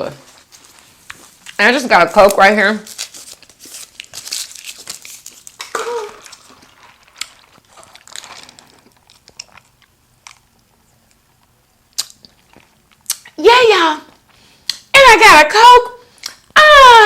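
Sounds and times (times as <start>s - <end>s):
onion rings crunching: 2.8s - 13.4s.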